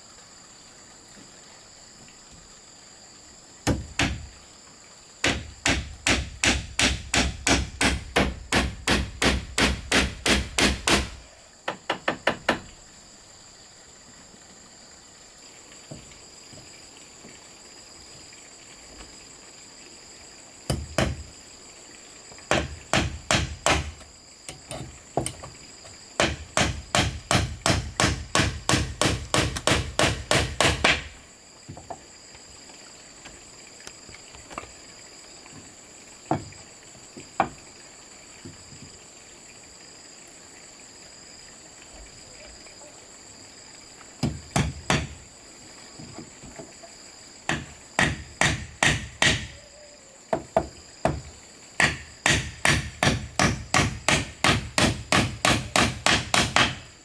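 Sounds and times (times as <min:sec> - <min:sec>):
insects buzzing: 0:00.0 - 0:57.0
rapid hammering: 0:03.7 - 0:04.3, 0:05.2 - 0:12.7, 0:20.7 - 0:21.2, 0:22.5 - 0:24.0, 0:26.2 - 0:31.2, 0:44.2 - 0:45.2, 0:47.5 - 0:49.5, 0:51.8 - 0:56.9.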